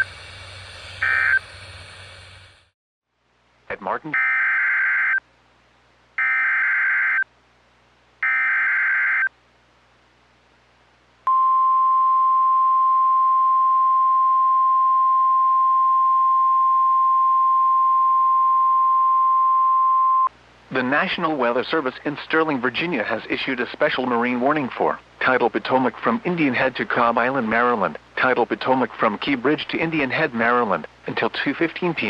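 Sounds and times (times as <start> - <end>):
steady warning alarm tone: 0.0 - 0.2, 1.0 - 1.6, 4.1 - 5.2, 6.2 - 7.2, 8.2 - 9.3
warbling digital data screech: 1.0 - 1.5.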